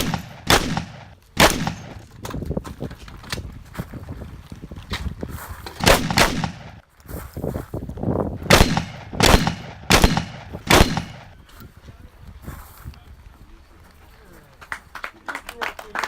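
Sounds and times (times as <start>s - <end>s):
shotgun shots with echo: 0.0s - 2.0s, 5.8s - 6.8s, 8.5s - 11.4s.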